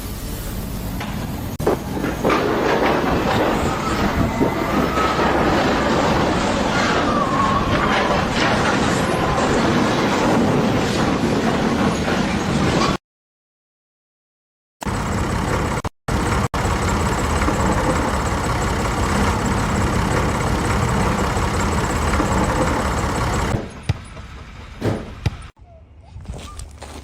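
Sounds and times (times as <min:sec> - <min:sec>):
scattered knocks: 0:01.0 - 0:06.9, 0:14.9 - 0:25.5
machine engine running: 0:14.8 - 0:25.5.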